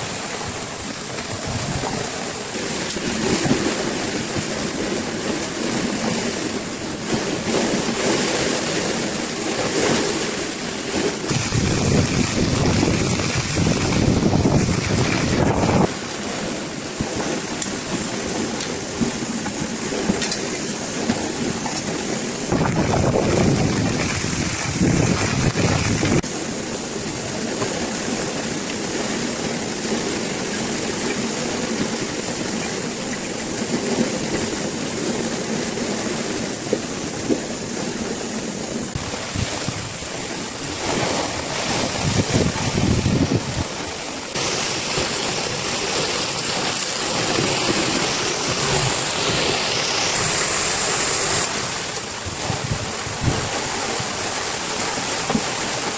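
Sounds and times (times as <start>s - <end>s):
heavy rain on water: 0.0s - 55.9s
wind rushing: 11.2s - 16.1s, 22.4s - 26.2s.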